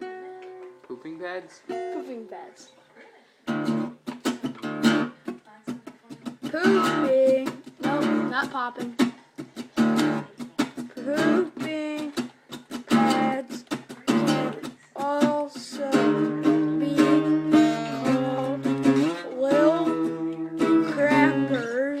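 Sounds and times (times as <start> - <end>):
strummed acoustic guitar: 0.0 - 2.8, 3.4 - 22.0
person singing sliding notes: 10.9 - 22.0.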